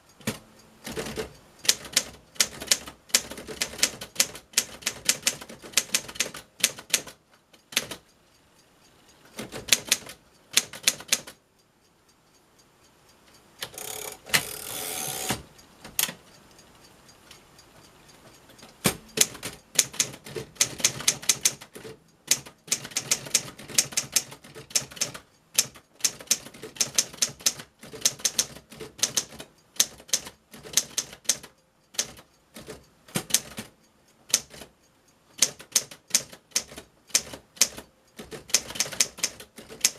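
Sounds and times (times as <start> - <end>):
typewriter keys clacking: 0.2 - 8.0, 9.4 - 11.4, 18.8 - 33.7, 35.4 - 39.9
typewriter rasping sound: 0.2 - 8.0, 9.4 - 11.4, 13.6 - 16.2, 18.8 - 33.7, 35.4 - 39.9.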